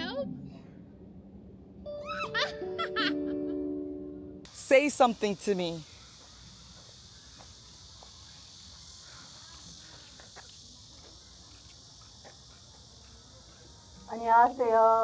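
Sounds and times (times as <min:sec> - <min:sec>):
high-pitched insect chorus: 0:04.5 - 0:15.0.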